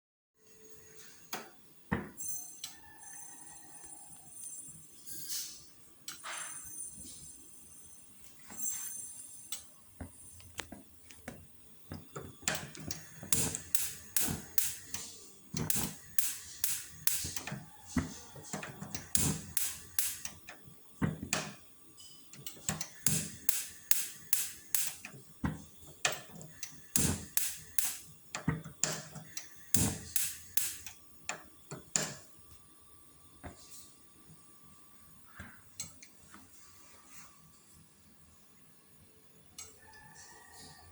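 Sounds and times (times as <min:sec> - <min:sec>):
gas stove igniter clicking: 0:11.9 - 0:21.6, 0:22.3 - 0:32.3.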